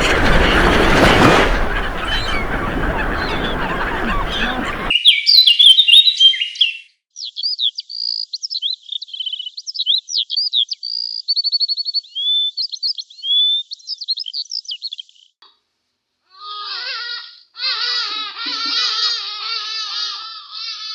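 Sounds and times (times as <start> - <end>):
high stepped bird calls: 0.0 - 4.9
songbird whistles and trills: 0.0 - 5.3.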